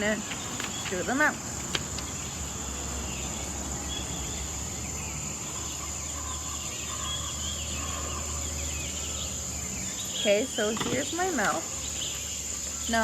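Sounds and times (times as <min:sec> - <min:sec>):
crickets trilling: 0:00.0 - 0:13.0.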